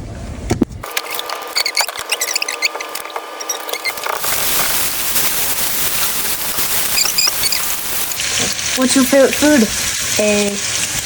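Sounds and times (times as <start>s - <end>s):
clicks and high squeaks: 0.8s - 8.2s
chicken sizzling in a frying pan: 3.9s - 11.0s.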